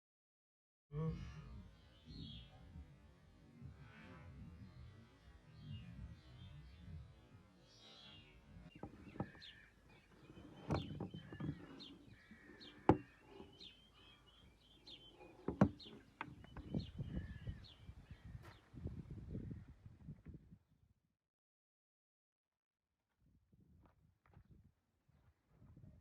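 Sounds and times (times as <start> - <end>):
small birds chirping: 1.3 - 2.9, 3.5 - 19.8.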